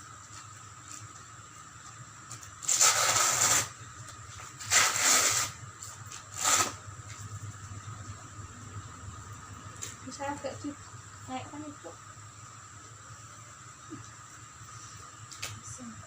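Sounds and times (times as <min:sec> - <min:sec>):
velcro ripping: 0:02.6 - 0:03.8, 0:04.6 - 0:06.8.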